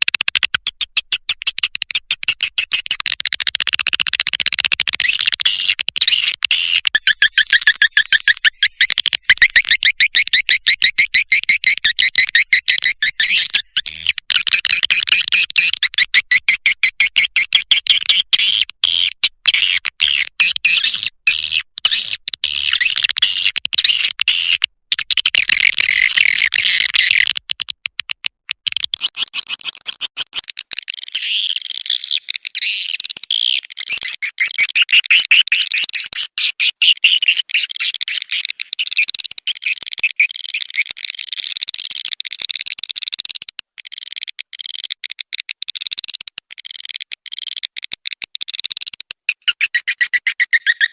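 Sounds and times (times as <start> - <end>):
swiftlet chirps and twittering: 4.9 - 16.0, 29.0 - 41.0, 49.3 - 50.9.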